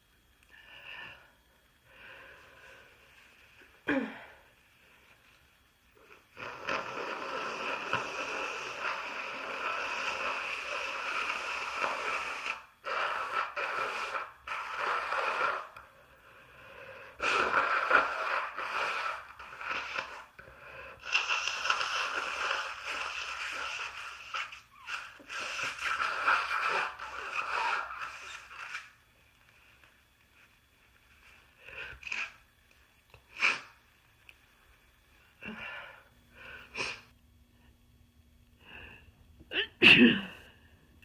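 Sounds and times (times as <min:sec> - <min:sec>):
woman blowing her nose: 0:06.0 - 0:28.9, 0:33.3 - 0:33.8, 0:36.7 - 0:37.1.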